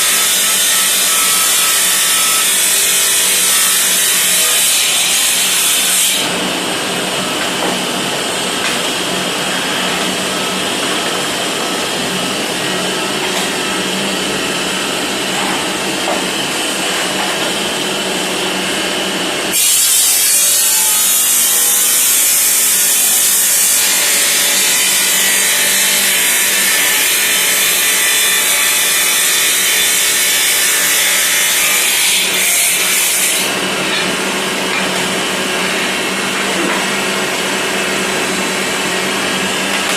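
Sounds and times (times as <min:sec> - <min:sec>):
saw blade grinding tile: 0:00.0 - 0:06.8, 0:19.5 - 0:35.1.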